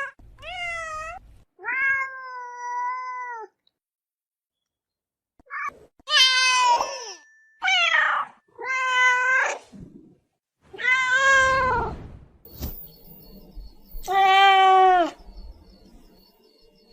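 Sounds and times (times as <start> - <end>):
ocelot chirp: 12.5 - 16.9.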